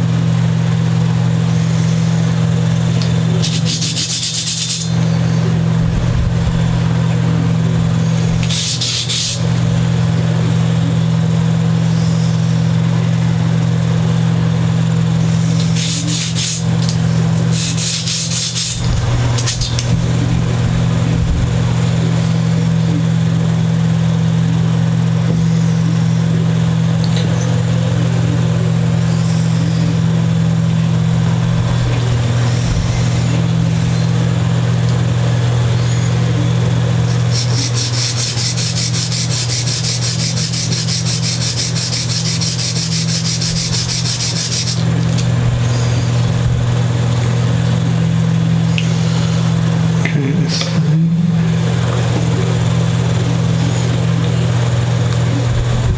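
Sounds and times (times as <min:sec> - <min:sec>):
steady low hum: 0:00.0 - 0:55.9
sanding block rubbing on wood: 0:03.0 - 0:05.1, 0:08.4 - 0:09.6, 0:15.6 - 0:19.8, 0:37.0 - 0:45.3.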